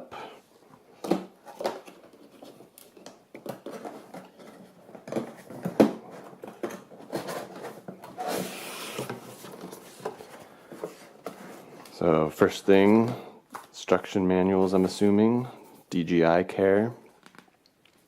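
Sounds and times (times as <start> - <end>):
sliding rustle of packaging: 3.6 - 12.0.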